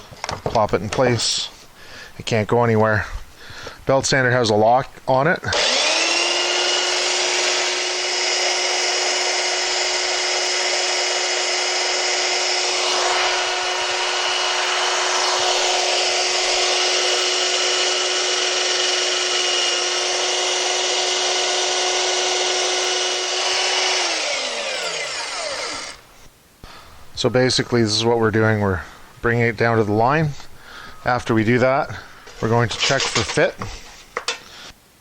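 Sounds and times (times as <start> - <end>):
electric belt sander running: 5.5 - 26.0
motor hum winding down: 5.5 - 26.0.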